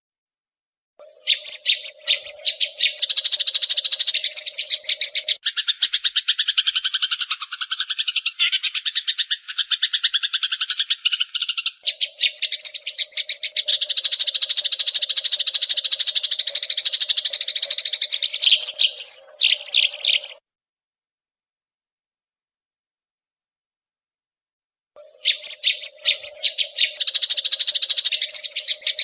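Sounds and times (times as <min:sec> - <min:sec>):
songbird trill: 0:01.0 - 0:20.4, 0:25.0 - 0:29.0.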